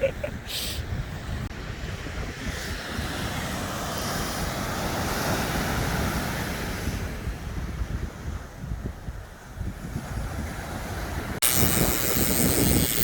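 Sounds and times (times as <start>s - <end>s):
wind buffeting microphone: 0.0s - 13.0s
surf washing onto beach: 1.6s - 8.6s.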